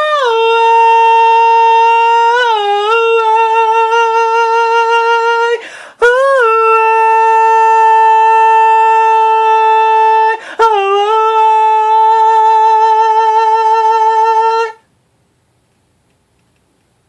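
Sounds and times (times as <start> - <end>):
man humming a long note: 0.0 - 14.8
click: 15.7 - 17.0.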